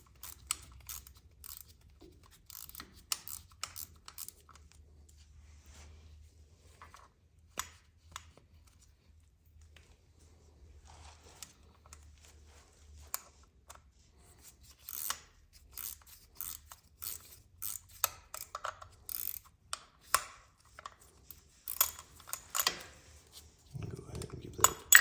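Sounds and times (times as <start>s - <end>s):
scrapes of small parts: 14.2s - 23.7s
metallic clicks of hand tools: 21.7s - 22.8s, 24.6s - 25.0s.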